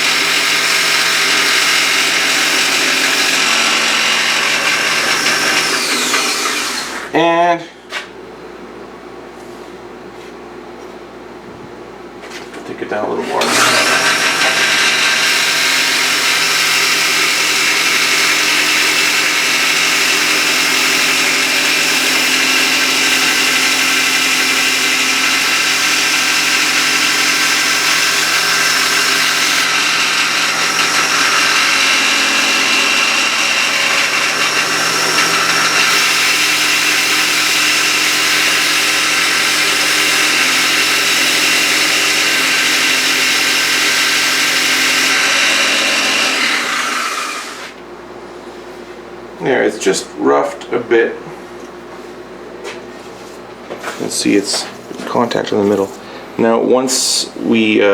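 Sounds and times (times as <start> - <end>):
electric sander running: 0.0 - 7.1, 13.4 - 47.8.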